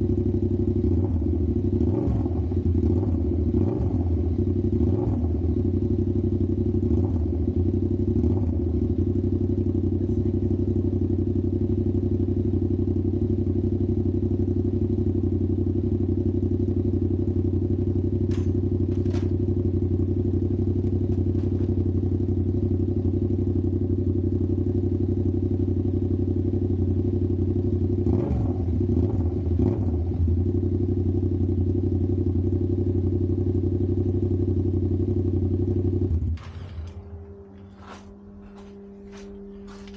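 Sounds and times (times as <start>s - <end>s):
motorcycle engine idling: 0.0s - 39.9s.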